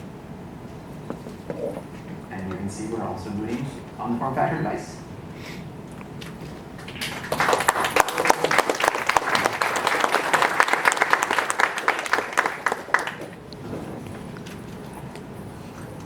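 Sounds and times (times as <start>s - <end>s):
audience applauding: 6.8s - 13.4s.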